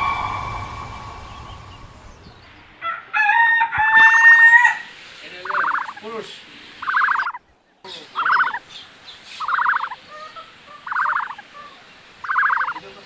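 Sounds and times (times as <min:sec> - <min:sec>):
fowl rattling call: 0:03.9 - 0:06.2, 0:06.8 - 0:07.4, 0:08.0 - 0:13.0.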